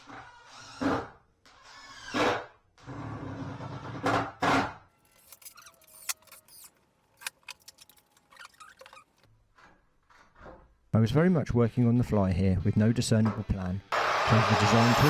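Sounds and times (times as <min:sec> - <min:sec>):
screws clinking in a tray: 0:05.1 - 0:08.7
noisy burst: 0:14.0 - 0:15.0.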